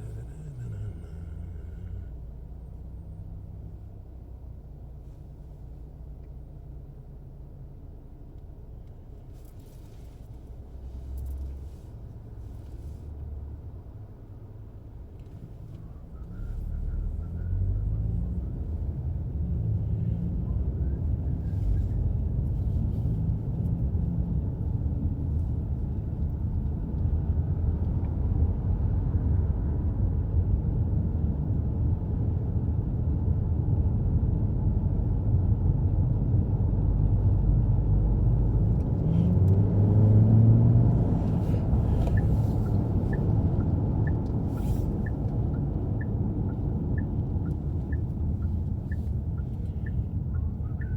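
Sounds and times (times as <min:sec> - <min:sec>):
car engine and road noise: 0:00.0 - 0:50.9
light ticking: 0:41.2 - 0:50.9.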